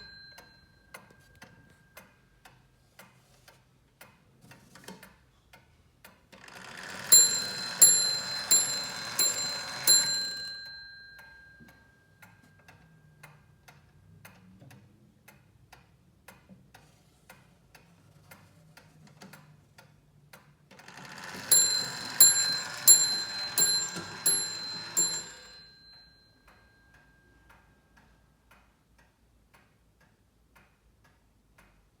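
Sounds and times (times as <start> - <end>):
whir of clock striking train: 0.0 - 0.6, 6.4 - 13.4, 20.8 - 27.7
clock ticking: 6.5 - 11.8, 20.3 - 32.0
clock hammer striking bell: 6.7 - 11.7, 21.0 - 26.2.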